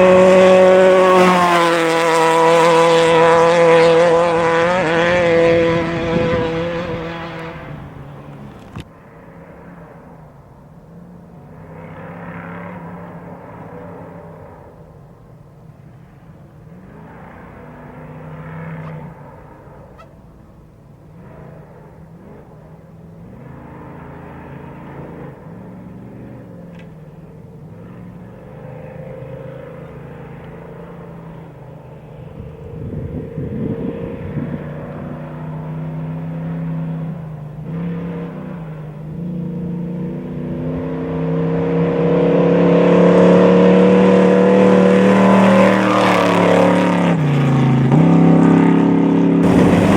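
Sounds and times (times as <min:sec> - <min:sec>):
race vehicle engine revving: 0:00.0 - 0:08.9, 0:32.0 - 0:49.9.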